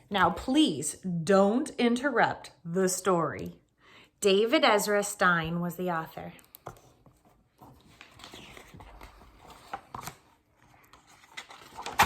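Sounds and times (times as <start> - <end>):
paper pages turning: 6.6 - 12.0.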